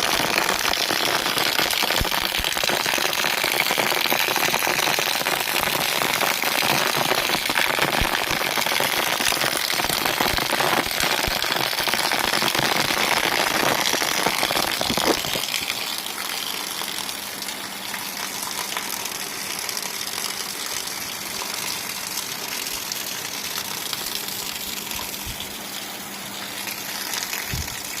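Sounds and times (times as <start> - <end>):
heavy rain pouring: 0.0 - 28.0.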